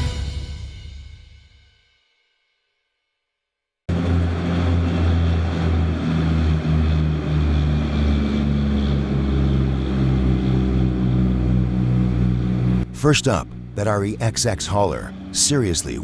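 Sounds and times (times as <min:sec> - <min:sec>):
heavy diesel engine running: 0:03.9 - 0:16.0.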